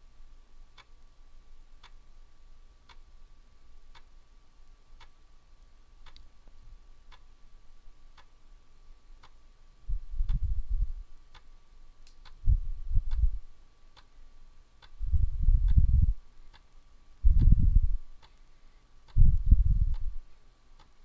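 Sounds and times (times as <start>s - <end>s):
low rumble: 9.9s - 11.2s, 12.4s - 13.5s, 15.0s - 16.2s, 17.2s - 18.1s, 19.1s - 20.3s.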